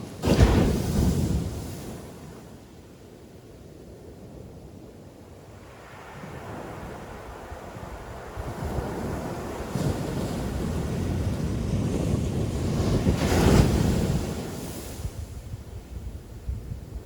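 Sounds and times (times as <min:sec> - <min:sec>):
wave breaking on beach: 0:05.6 - 0:15.1.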